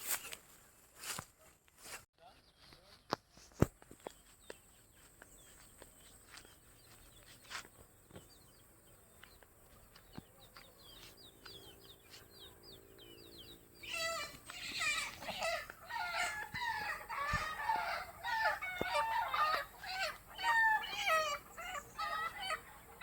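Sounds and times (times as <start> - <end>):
small bird chirping: 2.2 - 23.0
chicken clucking loudly: 13.8 - 23.0.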